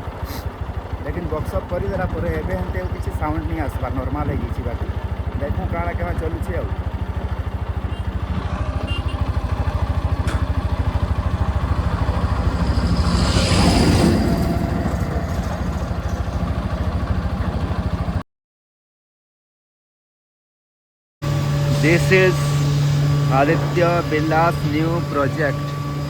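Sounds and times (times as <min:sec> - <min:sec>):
motorcycle engine running: 0:00.0 - 0:18.2.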